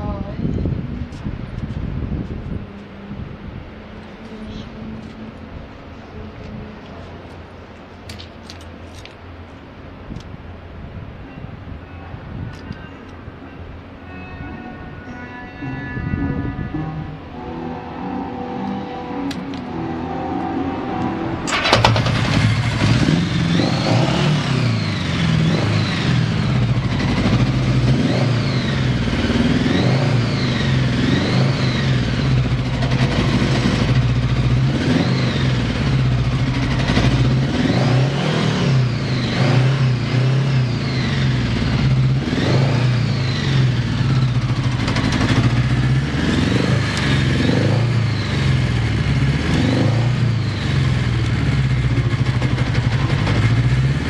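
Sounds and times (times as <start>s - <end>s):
motorcycle engine revving: 18.8s - 54.0s.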